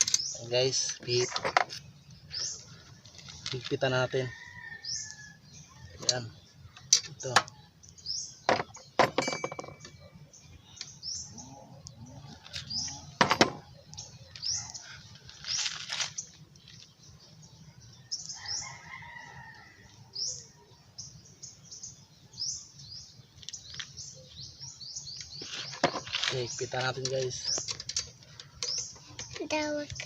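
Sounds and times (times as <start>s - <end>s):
small birds chirping: 0.0s - 30.0s.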